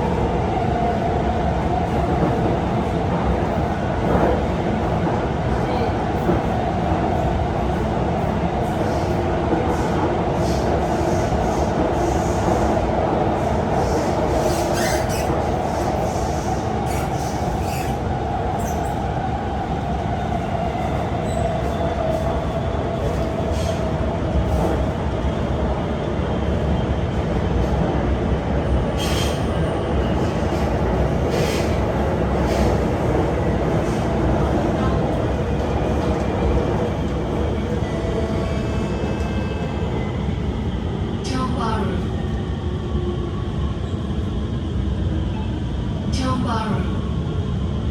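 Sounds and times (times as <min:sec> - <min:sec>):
train wheels rumbling on track: 0:00.0 - 0:41.3.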